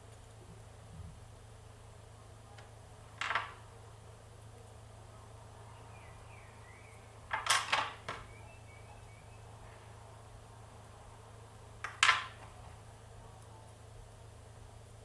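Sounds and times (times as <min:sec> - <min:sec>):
metal parts clicking and rattling: 0:07.3 - 0:08.2.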